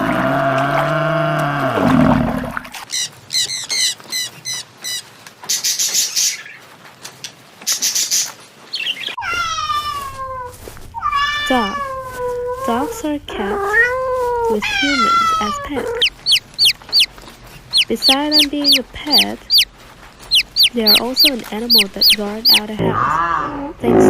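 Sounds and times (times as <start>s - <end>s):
cat meowing: 9.2s - 12.6s, 13.6s - 17.0s
short high chirping calls: 16.0s - 22.6s.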